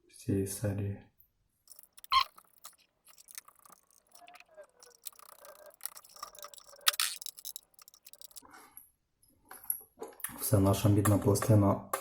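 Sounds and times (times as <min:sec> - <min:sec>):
screwdriver clicks and scrapes: 0:01.7 - 0:08.4.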